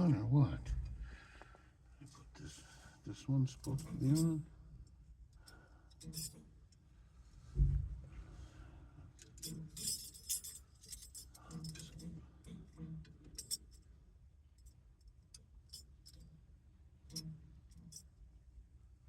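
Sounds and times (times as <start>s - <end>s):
small metal parts clicking: 3.6s - 4.4s, 5.4s - 6.4s, 9.2s - 12.1s, 13.0s - 13.8s, 17.1s - 18.1s.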